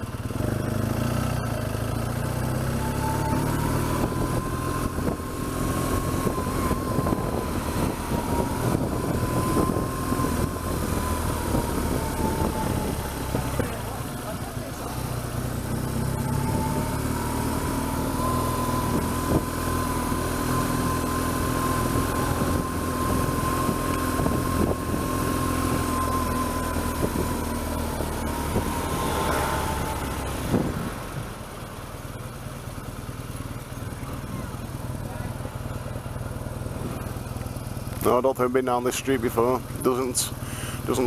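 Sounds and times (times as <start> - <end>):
motorcycle engine running: 0.0 - 41.0
thin steady whine: 2.8 - 15.2.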